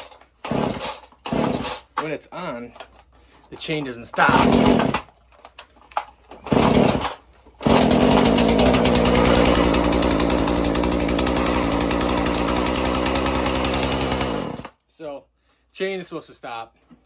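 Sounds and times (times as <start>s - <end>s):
chainsaw idling: 0.5s - 1.8s, 4.2s - 5.0s, 6.5s - 14.7s.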